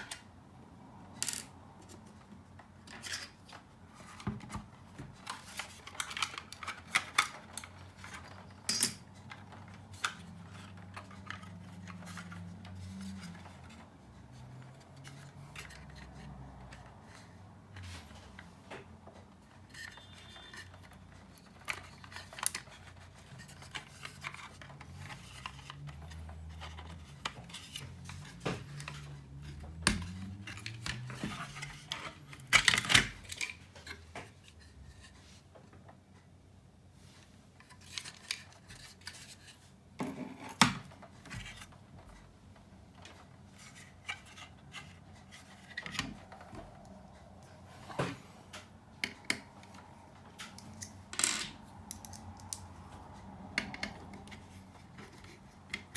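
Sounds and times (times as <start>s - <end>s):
plastic and metal parts handled: 1.2s - 35.5s, 37.0s - 47.2s, 48.0s - 55.9s.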